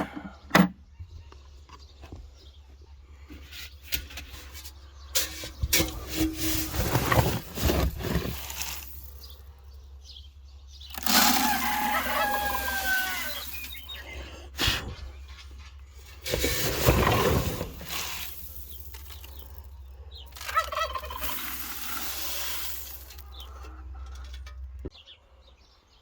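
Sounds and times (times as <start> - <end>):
metal bin knocks and scraping: 5.2 - 8.6, 16.2 - 18.0
feed pouring into bucket: 5.2 - 9.2, 10.9 - 14.0, 16.2 - 19.6, 20.4 - 23.4.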